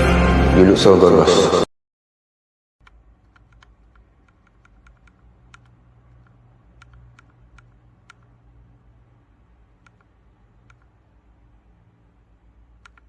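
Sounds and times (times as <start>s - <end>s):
mechanical keyboard typing: 2.8s - 8.4s, 9.8s - 11.0s, 12.8s - 13.0s
faint low hum: 2.8s - 13.0s.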